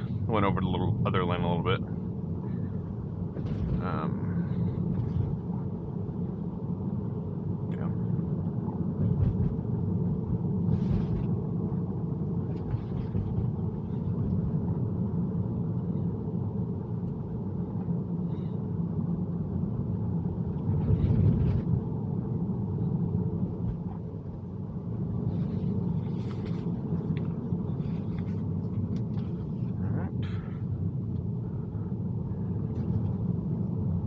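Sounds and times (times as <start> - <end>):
tyre and road noise: 20.0 - 33.6.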